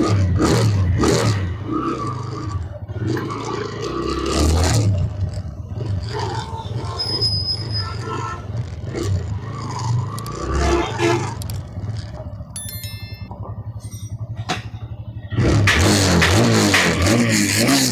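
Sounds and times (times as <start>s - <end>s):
motorcycle engine running: 8.2s - 17.9s.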